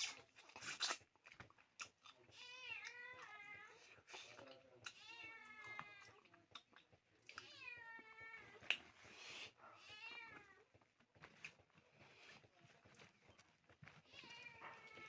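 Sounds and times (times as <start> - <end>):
cat meowing faintly: 2.4 - 6.4, 9.5 - 10.8, 14.0 - 15.0.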